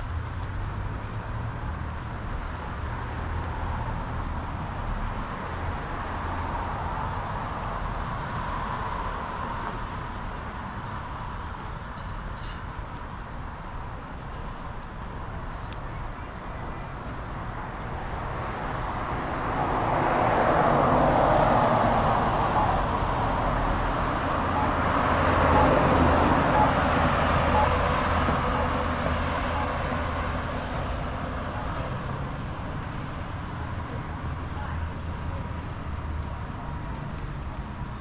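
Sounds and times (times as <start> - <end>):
passing road traffic: 0.0 - 38.0.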